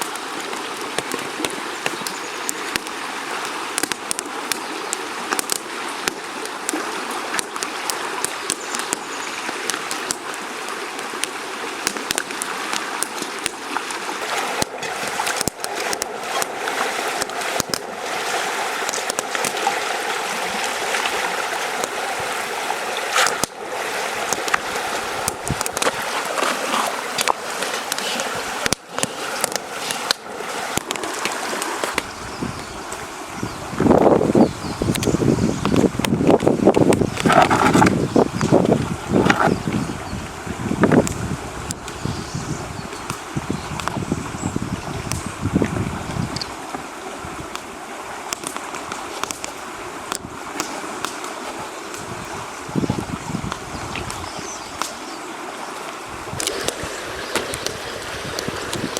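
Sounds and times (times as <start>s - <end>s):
small sharp ticks: 0.0s - 14.0s, 14.6s - 16.5s, 17.1s - 17.9s, 42.9s - 44.0s, 45.0s - 45.3s, 48.3s - 51.3s
river water rushing: 0.0s - 58.9s.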